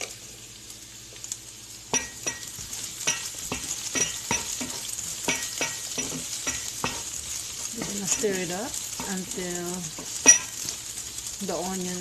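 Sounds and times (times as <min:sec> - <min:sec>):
onion sizzling in oil: 0:00.0 - 0:12.0
utensil knocking against pan: 0:02.0 - 0:07.2.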